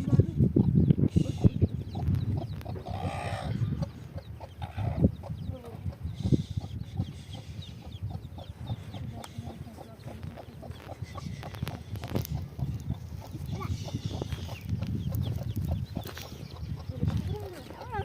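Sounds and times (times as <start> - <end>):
chickens clucking: 0.0 - 18.0.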